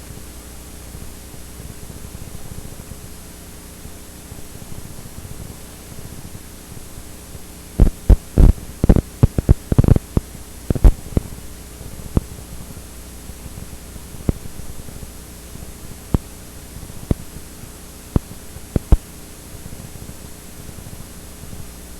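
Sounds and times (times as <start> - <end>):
low mains hum: 0.0 - 21.9
tape hiss: 0.0 - 21.9
loud pops and crackles: 7.8 - 11.3, 18.2 - 19.1.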